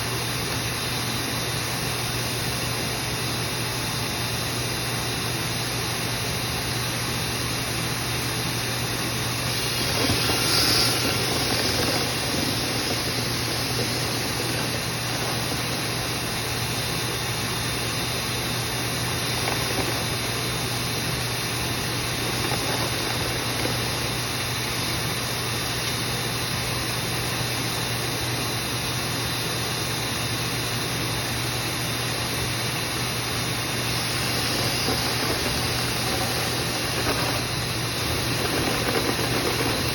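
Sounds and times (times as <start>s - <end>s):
motor humming: 8.3s - 25.0s, 33.2s - 39.9s
rushing hiss of air: 9.2s - 16.8s.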